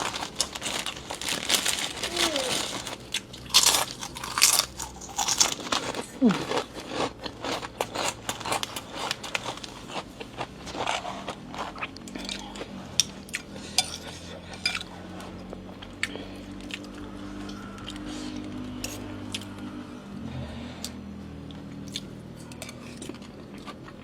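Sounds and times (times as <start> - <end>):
close-up chewing: 0.0 - 24.0
steady low hum: 0.0 - 24.0
spoon and chopsticks clinking bowl: 13.4 - 14.9.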